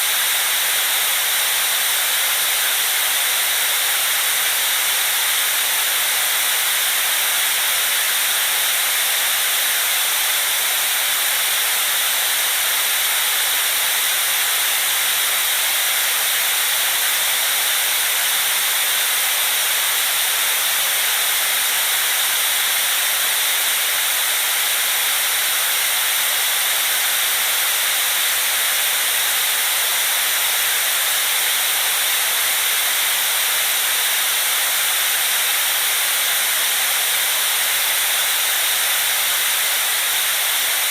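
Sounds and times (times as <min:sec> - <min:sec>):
white noise hiss: 0:00.0 - 0:40.9.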